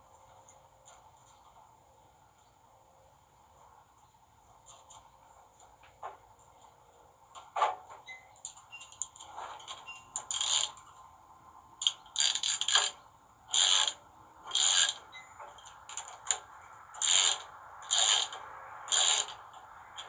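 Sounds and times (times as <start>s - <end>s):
ratchet wrench clicking: 10.2s - 10.9s, 11.8s - 20.0s.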